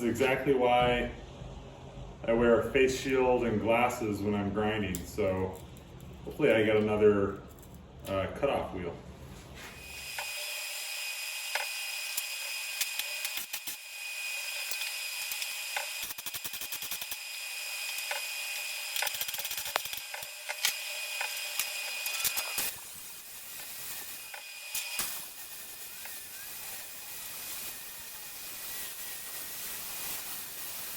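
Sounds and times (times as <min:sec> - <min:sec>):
angle grinder cutting steel: 0:09.8 - 0:30.9.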